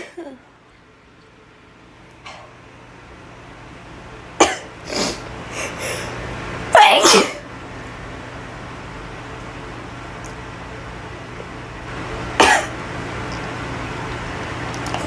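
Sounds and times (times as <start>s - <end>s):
quick breaths: 4.9s - 6.2s
woman sneezing: 6.7s - 7.4s.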